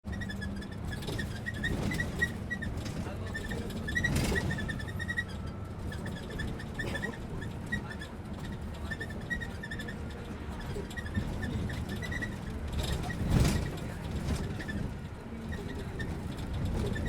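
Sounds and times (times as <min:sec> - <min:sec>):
bus body squeaking: 0:00.0 - 0:17.0
bus engine rumbling: 0:00.0 - 0:17.0.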